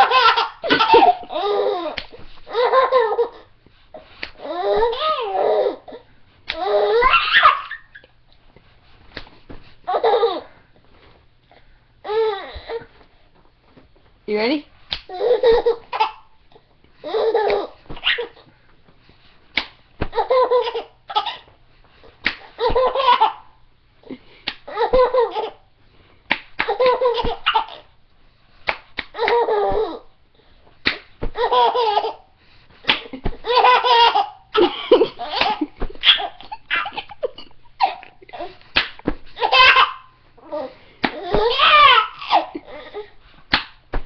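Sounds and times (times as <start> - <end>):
children's belly laughter: 0.0 - 3.4, 32.9 - 38.6, 39.3 - 43.2
hand smacking a person: 9.1 - 9.6, 14.9 - 15.6, 19.5 - 20.2, 22.2 - 22.9, 24.4 - 24.7, 26.3 - 27.4, 28.6 - 29.4, 30.8 - 31.4, 32.9 - 33.4, 35.4 - 36.1, 38.7 - 39.4, 41.0 - 41.6, 43.5 - 44.0.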